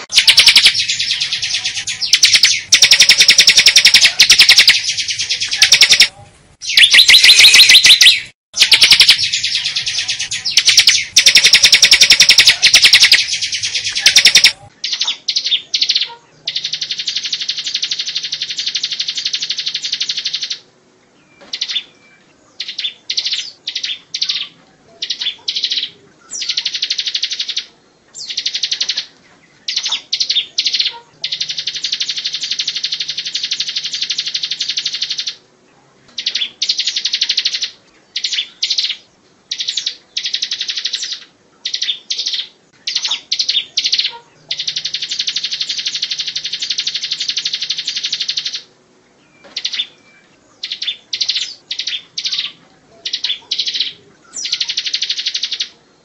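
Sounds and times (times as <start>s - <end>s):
bird singing fast high trills: 0.0s - 20.6s.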